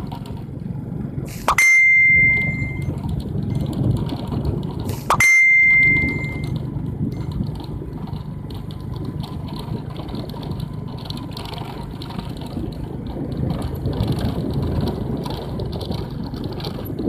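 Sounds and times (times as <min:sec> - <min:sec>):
low rumble: 0:00.0 - 0:11.3
wind buffeting microphone: 0:00.0 - 0:17.0
bicycle rattling clicks: 0:01.3 - 0:17.0.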